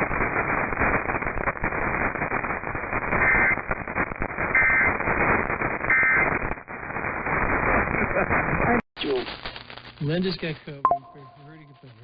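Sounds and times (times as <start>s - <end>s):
radio static hiss: 0.0s - 12.0s
paired data tones: 10.8s - 12.0s.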